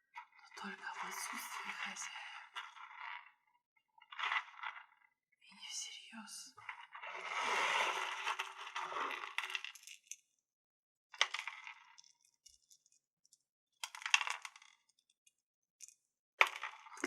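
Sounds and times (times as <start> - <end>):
crystals clinking and rattling: 9.2 - 10.3, 11.2 - 13.0, 15.8 - 17.0.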